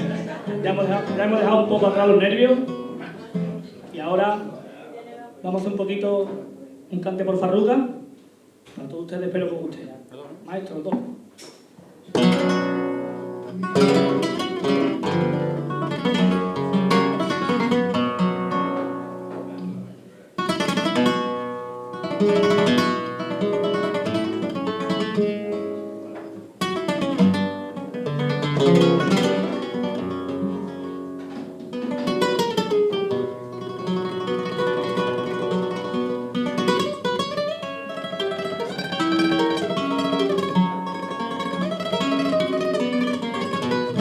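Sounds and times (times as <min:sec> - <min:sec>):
flamenco guitar playing: 0:00.0 - 0:04.6, 0:12.1 - 0:44.0
loud strummed guitar chords: 0:12.2 - 0:19.8, 0:20.4 - 0:44.0.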